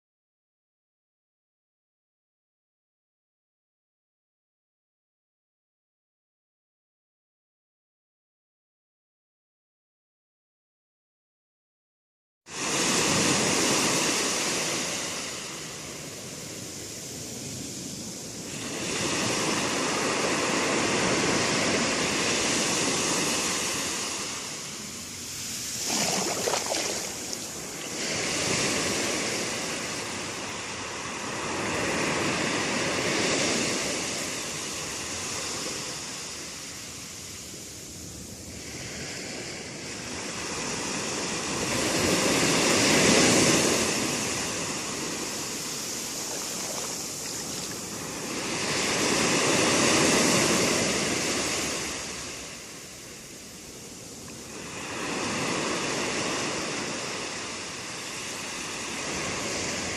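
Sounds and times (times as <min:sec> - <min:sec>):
sea waves breaking on shore: 0:12.5 - 0:37.6, 0:38.5 - 0:59.9.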